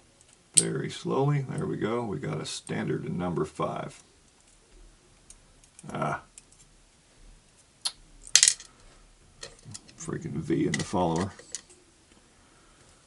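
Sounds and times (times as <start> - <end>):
small metal parts clinking: 8.2 - 8.7.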